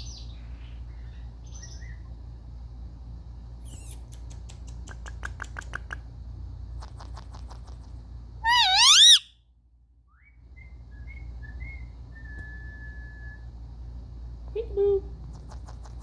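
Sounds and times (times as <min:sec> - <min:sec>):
parrot clicking chirps: 0:03.7 - 0:06.0
parrot whistling: 0:08.4 - 0:09.3.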